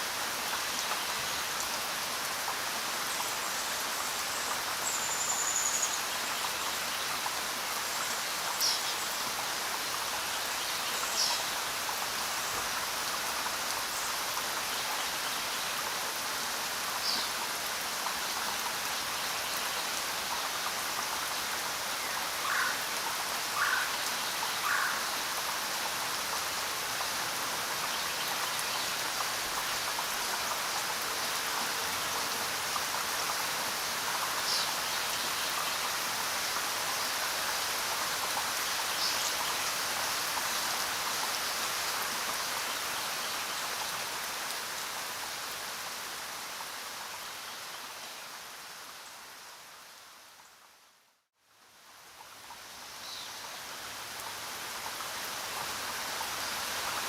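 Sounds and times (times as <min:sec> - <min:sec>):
steady rain hissing: 0:00.0 - 0:57.0.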